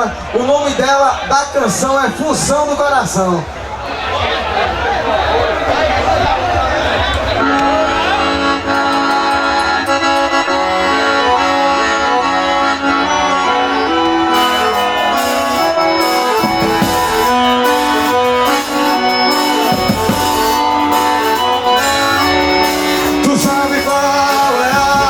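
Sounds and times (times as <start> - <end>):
accordion melody: 6.7 - 25.0.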